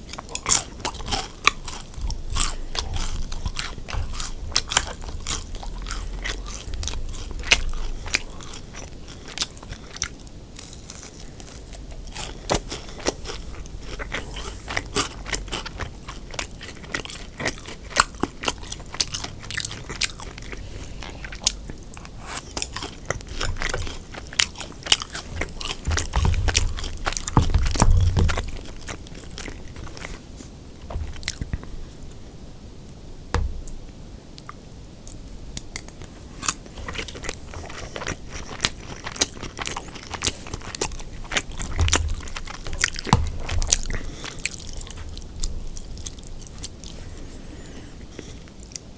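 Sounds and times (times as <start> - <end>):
chewing crispy food: 0.0 - 33.0, 33.8 - 48.9
low thumps: 25.3 - 29.5, 30.8 - 32.4, 33.2 - 34.0.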